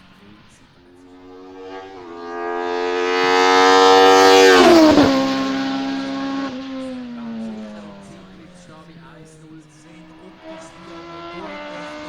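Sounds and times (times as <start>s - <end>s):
race car engine at high revs passing: 0.0s - 12.0s.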